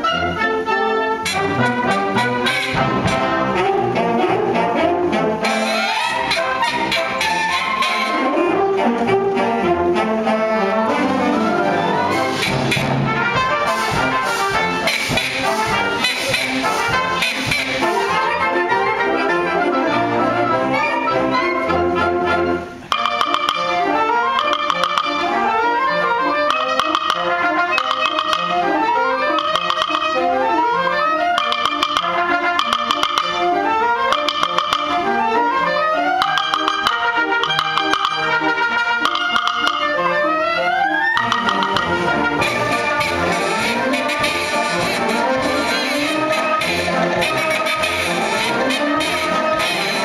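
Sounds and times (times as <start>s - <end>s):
wind band brass and clarinets: 0.0s - 50.0s
mallet percussion solo: 1.2s - 3.8s, 5.4s - 8.4s, 11.5s - 19.4s, 22.9s - 30.3s, 31.2s - 35.4s, 36.0s - 50.0s.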